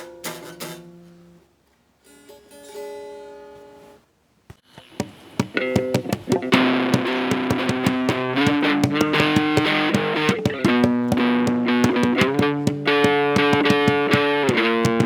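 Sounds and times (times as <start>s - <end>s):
guitar chords: 4.8s - 15.0s
hands banging on tabletop: 4.8s - 15.0s.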